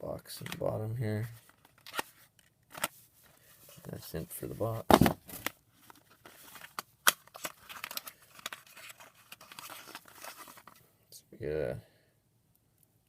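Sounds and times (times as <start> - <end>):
packaging rustling and crinkling: 4.9 - 10.8.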